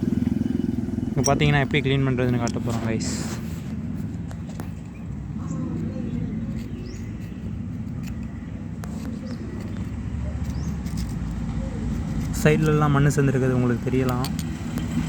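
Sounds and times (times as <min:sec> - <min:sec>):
low mechanical hum: 0:00.0 - 0:15.0
bird chirps: 0:04.3 - 0:12.2
light clicks: 0:13.8 - 0:15.0.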